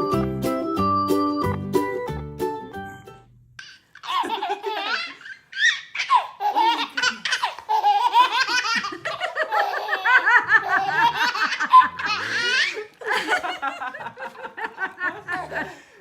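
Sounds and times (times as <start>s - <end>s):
background music: 0.0s - 3.3s
baby laughing and giggling: 3.6s - 13.0s.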